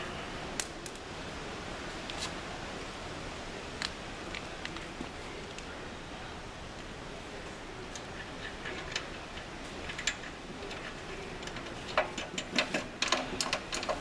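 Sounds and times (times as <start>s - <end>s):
metal nuts and washers clinking: 8.0s - 14.0s.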